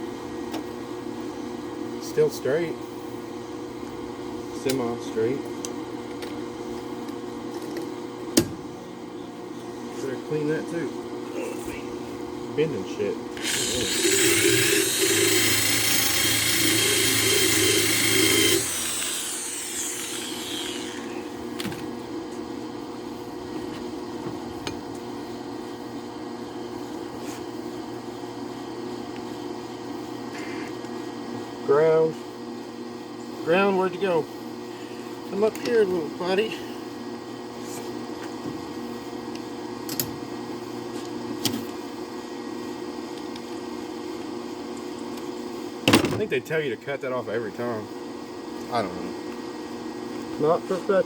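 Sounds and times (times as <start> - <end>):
steady low hum: 0.0 - 38.1
angle grinder spinning: 13.4 - 21.4
welding machine hum: 13.4 - 21.5.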